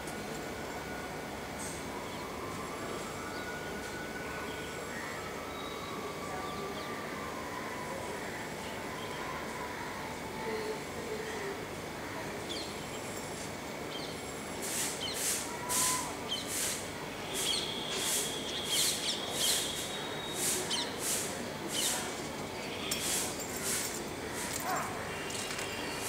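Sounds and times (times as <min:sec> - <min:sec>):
small birds chirping: 0:17.4 - 0:21.0.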